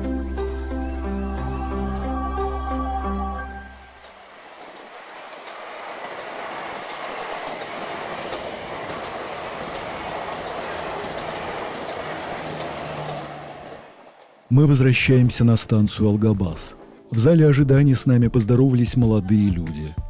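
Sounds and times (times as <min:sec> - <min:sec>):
train wheels clacking on rails: 0:03.9 - 0:14.5.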